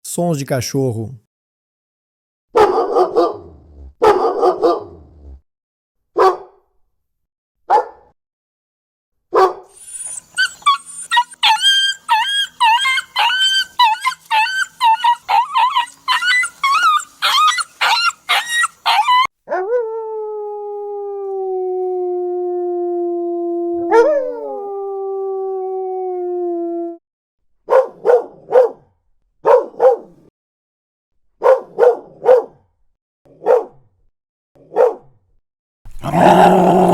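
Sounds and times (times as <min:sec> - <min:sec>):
dogs barking: 0:02.6 - 0:05.0, 0:06.2 - 0:06.5, 0:07.7 - 0:08.0, 0:09.3 - 0:19.7, 0:27.7 - 0:28.8, 0:29.4 - 0:30.1, 0:31.4 - 0:32.6, 0:33.4 - 0:33.8, 0:34.7 - 0:35.0, 0:35.9 - 0:36.9
dogs yelping: 0:09.4 - 0:19.8, 0:35.9 - 0:36.9
dog howling: 0:09.8 - 0:27.0, 0:35.9 - 0:36.9.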